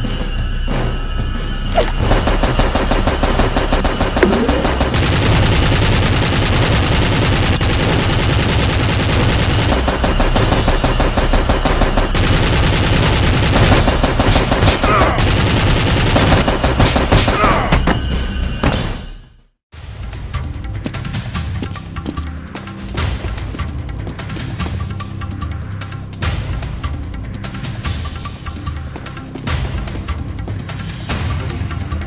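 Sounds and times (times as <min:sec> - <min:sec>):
rapid automatic gunfire: 0:02.0 - 0:17.6.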